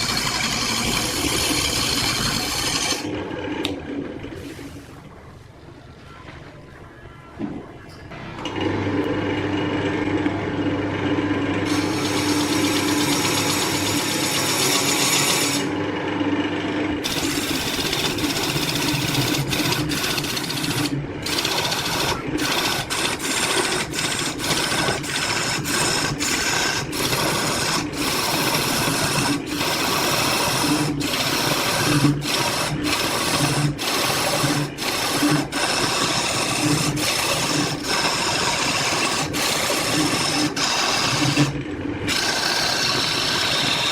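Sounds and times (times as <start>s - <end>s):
power tool cutting wood: 0.0s - 3.1s, 11.6s - 15.8s, 17.0s - 43.9s.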